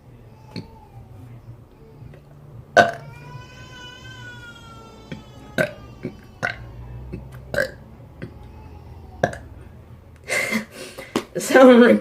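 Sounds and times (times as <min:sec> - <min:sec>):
boy burping: 0:02.8 - 0:03.1, 0:05.1 - 0:06.7, 0:07.5 - 0:07.8, 0:09.2 - 0:09.5.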